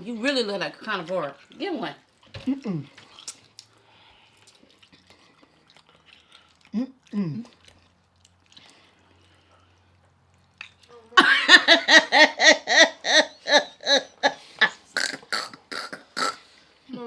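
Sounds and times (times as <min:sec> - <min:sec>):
person laughing hard: 0:11.2 - 0:14.8.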